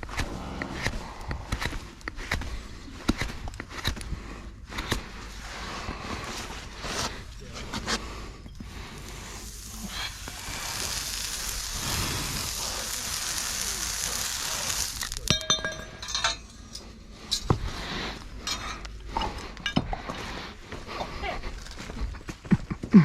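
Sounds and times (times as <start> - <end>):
hot horseshoe sizzling: 7.2 - 16.7
metallic clinks of tools: 15.3 - 17.5.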